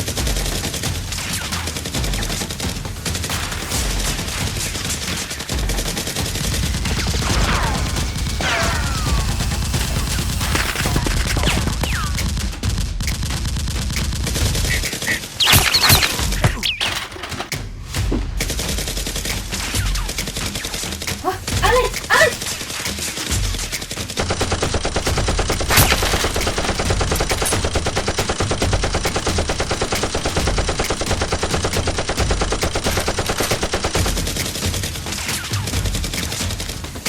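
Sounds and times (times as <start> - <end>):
sharp gunshots: 0.0 - 37.0
automatic gunfire: 13.0 - 17.2, 22.1 - 37.0.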